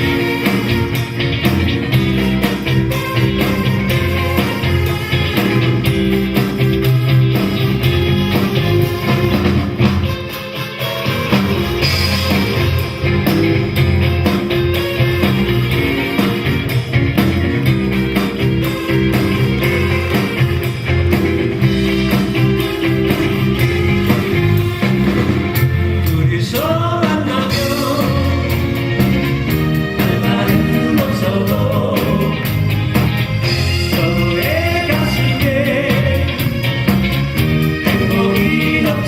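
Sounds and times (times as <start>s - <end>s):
live rock band playing: 0.0s - 39.0s
person singing: 25.9s - 29.0s, 29.8s - 32.6s, 33.5s - 36.7s, 37.6s - 39.0s.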